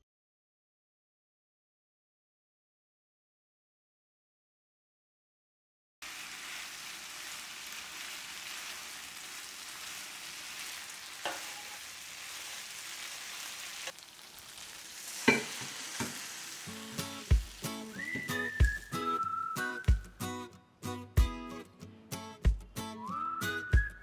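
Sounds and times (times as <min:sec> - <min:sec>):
food sizzling in hot oil: 0:06.0 - 0:19.3
utensil knocking against pan: 0:11.2 - 0:11.6, 0:15.3 - 0:16.2
music with a beat: 0:17.3 - 0:24.0.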